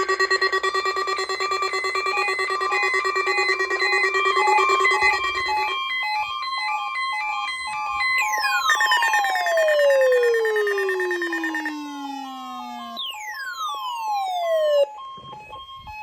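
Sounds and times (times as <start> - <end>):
buzzy electronic drone: 0.0 - 14.9
rapid electronic beeps: 0.0 - 16.0
falling electronic sweep: 8.2 - 14.9.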